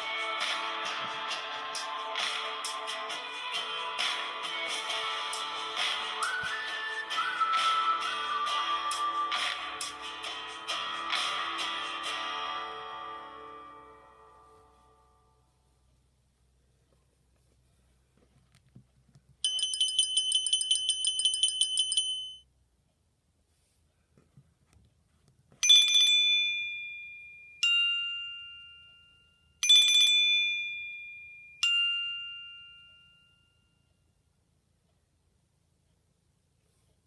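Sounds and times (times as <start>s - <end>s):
bell-like phone chimes: 19.4s - 22.4s, 25.6s - 34.1s
rapid trilling phone ring: 19.4s - 22.4s.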